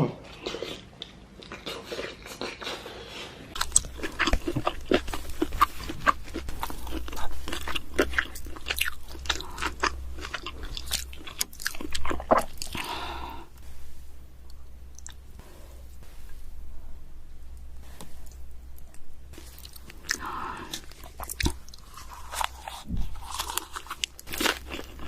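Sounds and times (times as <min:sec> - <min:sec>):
crisp food crunching: 0:03.5 - 0:13.1, 0:19.4 - 0:25.0.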